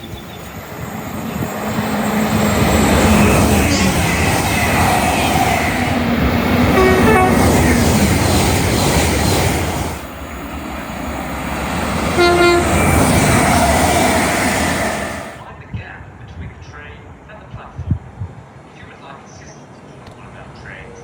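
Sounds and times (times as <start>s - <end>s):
train wheel and rail noise: 0.0s - 21.0s
train horn blasts: 6.7s - 7.6s, 12.2s - 13.0s.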